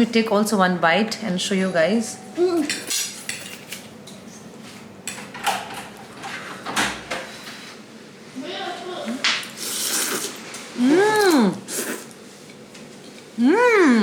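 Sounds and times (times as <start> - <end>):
cutlery clinking against a plate: 2.6 - 3.9.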